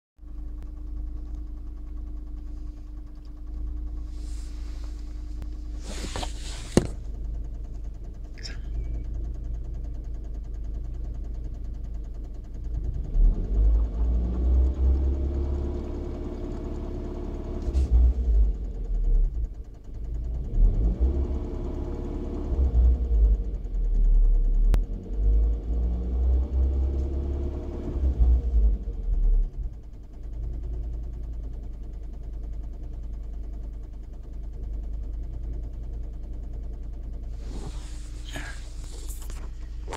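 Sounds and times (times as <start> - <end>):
car engine running: 0.2 - 39.9
engine clicking and tapping: 0.2 - 39.9.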